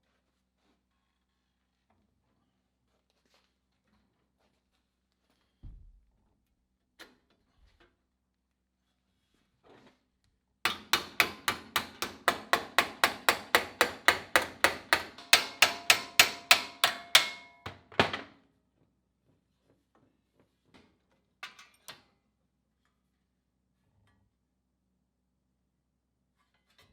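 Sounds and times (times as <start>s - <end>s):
hammer striking sheet steel: 10.7s - 17.9s.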